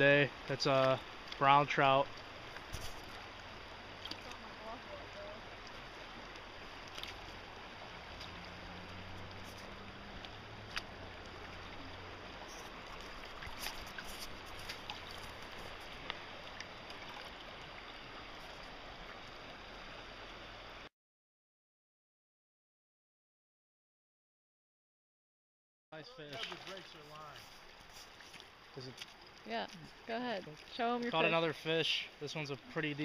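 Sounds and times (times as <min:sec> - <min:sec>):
creek water running: 0:00.0 - 0:20.9, 0:26.0 - 0:33.0.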